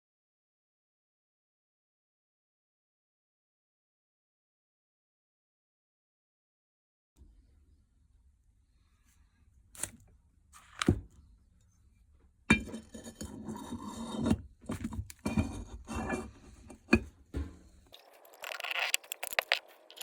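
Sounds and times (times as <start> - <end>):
metal clinks and scraping: 15.2 - 20.0.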